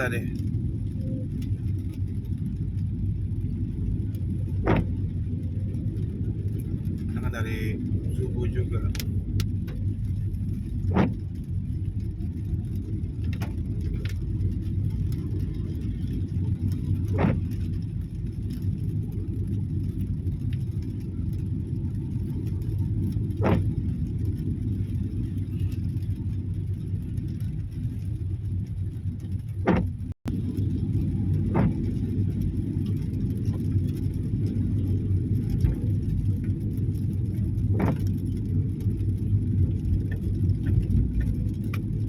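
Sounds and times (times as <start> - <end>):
tyres and engine rumble: 0.0 - 42.0.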